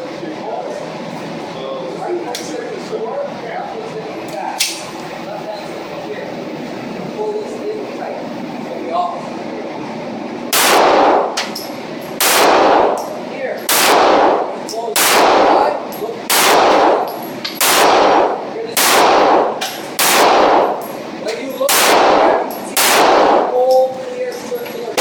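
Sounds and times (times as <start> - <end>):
pistol shots echoing indoors: 10.5 - 21.0, 21.7 - 23.9.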